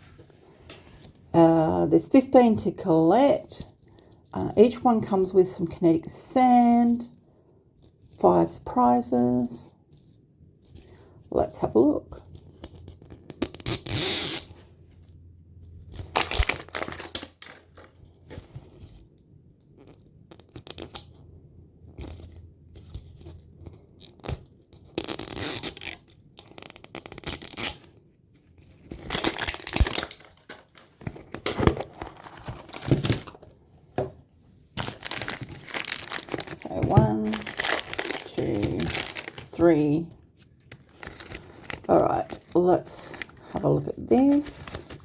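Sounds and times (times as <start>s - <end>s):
wrapping crinkling: 12.5s - 19.1s, 22.0s - 33.6s, 34.6s - 45.0s
wrapping being torn: 13.2s - 14.6s, 15.9s - 18.0s, 19.8s - 21.2s, 22.0s - 33.4s, 34.7s - 39.8s, 40.4s - 43.6s.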